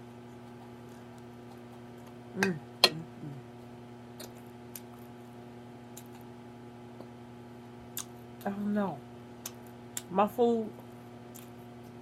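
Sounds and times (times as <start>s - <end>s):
steady low hum: 0.0s - 12.0s
person chewing: 0.3s - 3.4s, 4.1s - 5.2s, 5.9s - 6.3s, 9.4s - 10.1s, 11.3s - 11.6s.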